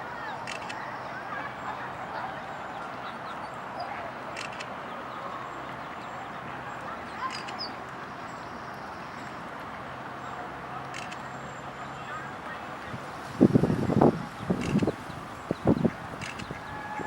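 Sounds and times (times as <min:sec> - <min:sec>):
ducks quacking: 0:15.5 - 0:17.0.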